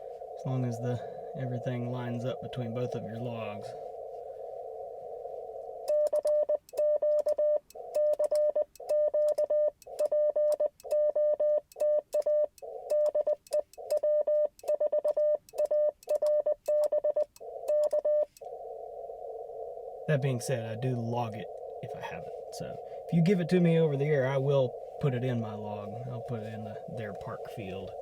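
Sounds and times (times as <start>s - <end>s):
morse code tone: 5.9s - 18.3s.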